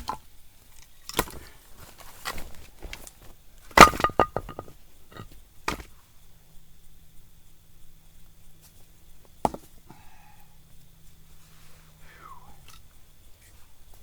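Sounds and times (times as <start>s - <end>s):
firewood cracking: 2.2s - 5.9s
wood clattering: 3.7s - 5.9s.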